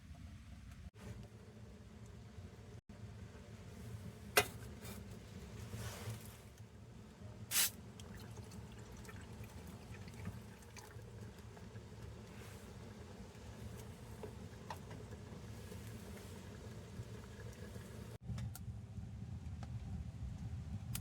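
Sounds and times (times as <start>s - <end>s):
low background hum: 0.0s - 21.0s
liquid being poured: 8.0s - 11.9s.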